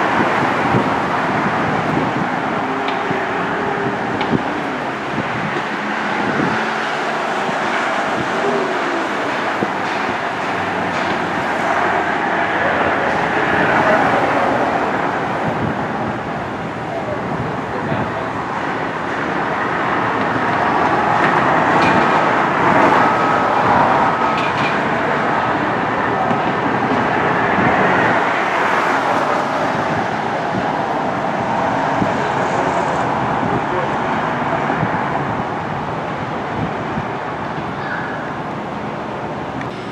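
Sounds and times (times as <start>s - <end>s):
train rolling along track: 0.0s - 39.9s.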